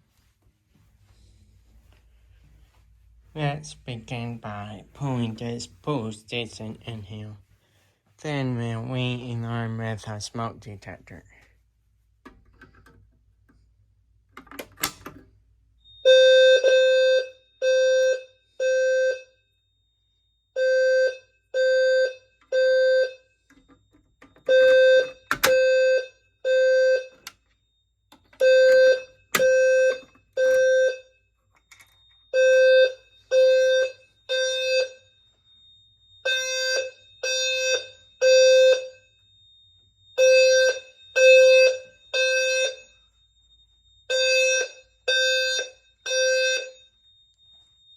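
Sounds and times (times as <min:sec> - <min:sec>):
fire alarm horn blasts: 0:15.6 - 0:23.5, 0:24.1 - 0:47.9.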